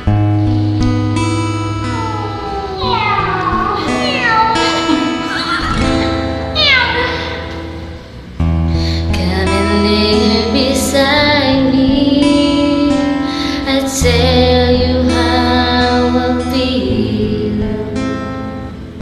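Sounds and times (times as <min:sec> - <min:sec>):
woman singing long notes: 0:09.1 - 0:18.0.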